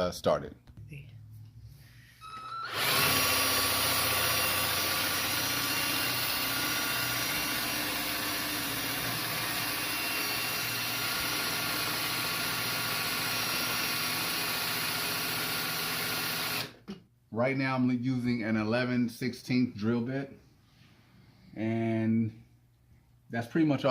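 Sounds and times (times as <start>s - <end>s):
electric drill boring through metal: 2.2s - 16.8s.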